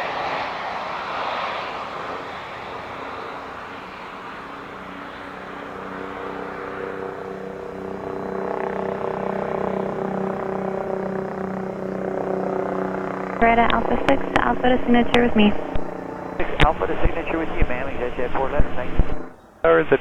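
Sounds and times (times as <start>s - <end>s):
jet turbofan noise: 0.0s - 20.0s
droning with pitched tones: 13.4s - 19.4s.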